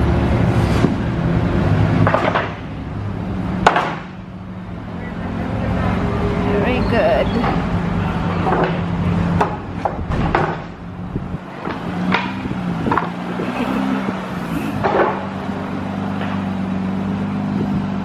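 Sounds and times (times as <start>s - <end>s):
car engine idling: 1.4s - 18.0s
sharp knocks and clunks: 2.0s - 2.7s, 3.6s - 4.2s, 8.3s - 13.9s, 14.8s - 15.4s.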